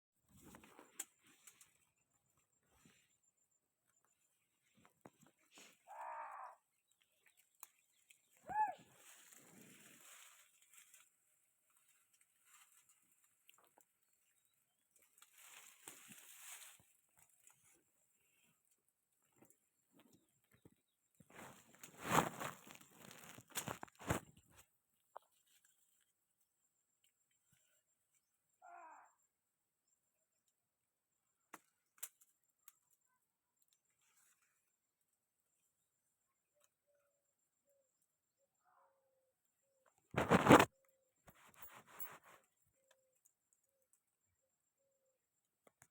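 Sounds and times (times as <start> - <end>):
quiet rustling: 14.9 - 17.8, 21.2 - 26.1, 41.3 - 42.6.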